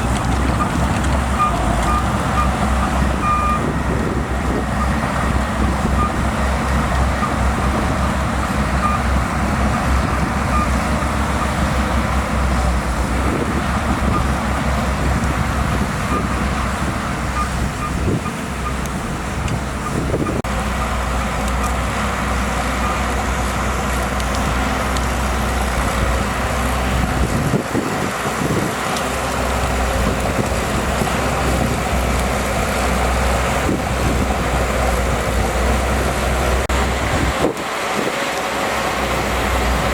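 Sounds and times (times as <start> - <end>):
bulldozer diesel engine running: 0.0 - 39.9
reversing alarm beeping: 3.2 - 3.7, 8.8 - 9.1.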